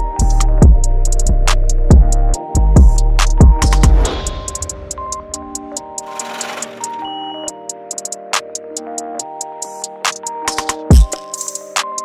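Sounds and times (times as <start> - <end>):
electronic synth music: 1.9 - 10.0.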